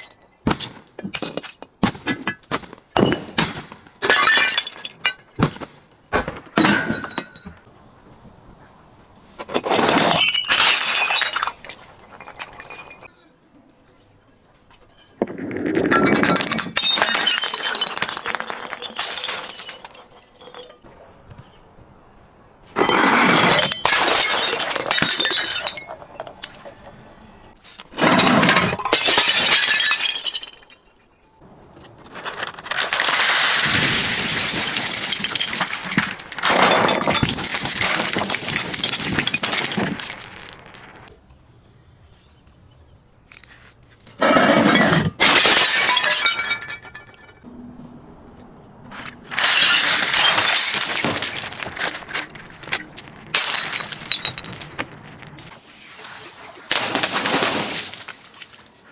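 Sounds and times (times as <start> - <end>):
glass bottles being crushed: 0.0 - 5.7, 6.6 - 7.7, 9.9 - 13.1, 14.9 - 20.9, 22.8 - 26.9, 28.0 - 30.9, 32.1 - 41.1, 44.5 - 47.5, 49.0 - 55.5.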